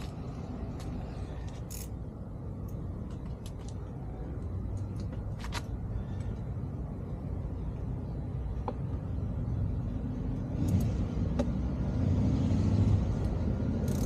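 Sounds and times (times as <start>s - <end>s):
steady low rumble: 0.0s - 14.0s.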